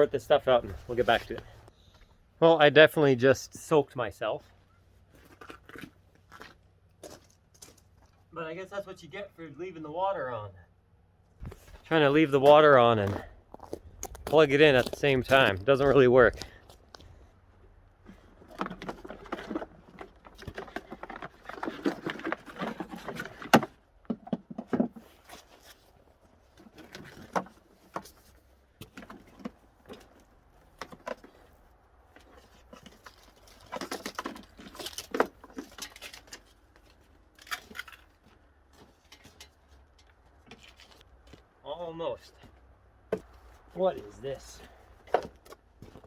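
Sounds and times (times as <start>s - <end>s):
hose fittings rustling: 25.0s - 41.2s.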